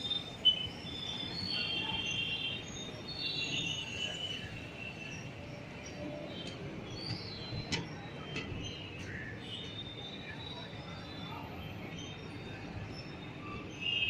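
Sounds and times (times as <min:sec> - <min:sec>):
train rumbling slowly: 0:02.8 - 0:13.7.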